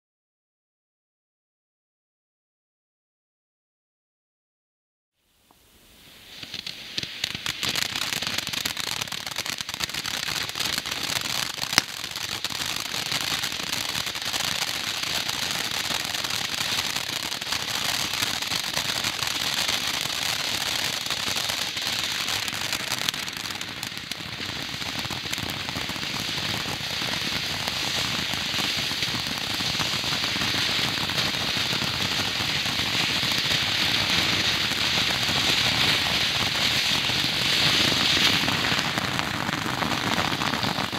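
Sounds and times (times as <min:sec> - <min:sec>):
firework crackling: 0:05.4 - 0:40.9
sharp firework pop: 0:06.2 - 0:08.7.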